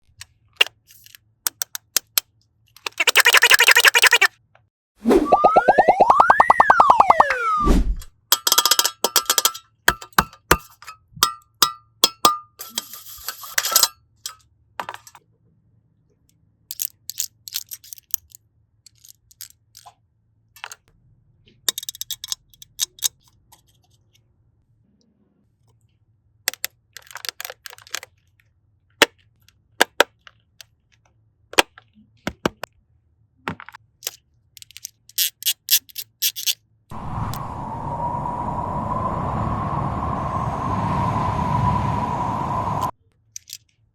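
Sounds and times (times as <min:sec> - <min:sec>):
plastic and candy pieces clicking: 0:26.5 - 0:28.2, 0:34.1 - 0:36.6.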